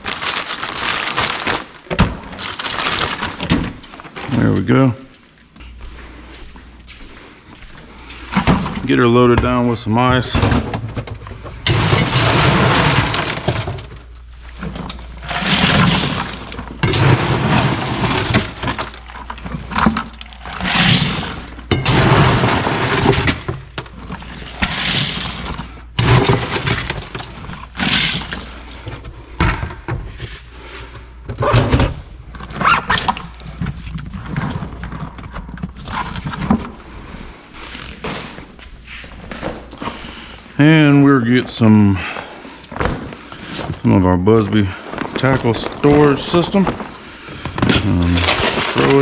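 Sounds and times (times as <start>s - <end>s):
ice cubes clattering into cooler: 0.0s - 4.6s, 8.2s - 29.4s, 32.4s - 37.0s, 42.7s - 49.0s.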